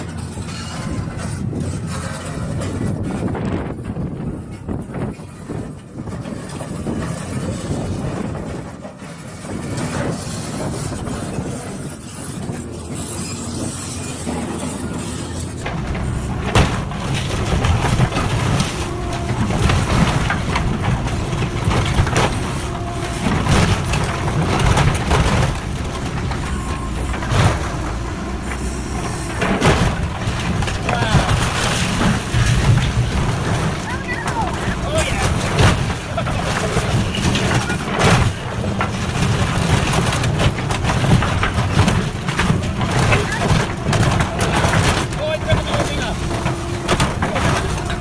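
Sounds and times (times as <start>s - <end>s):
heavy machinery rumbling: 0.0s - 48.0s
sharp knocks: 15.7s - 48.0s.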